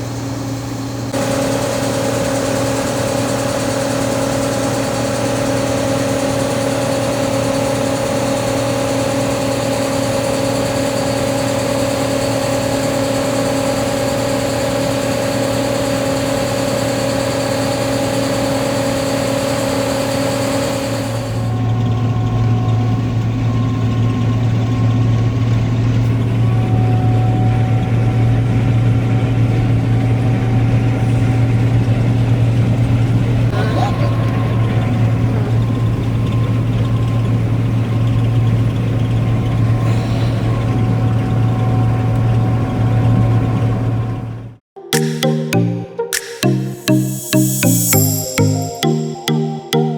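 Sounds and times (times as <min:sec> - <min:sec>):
diesel engine droning: 0:33.6 - 0:39.8.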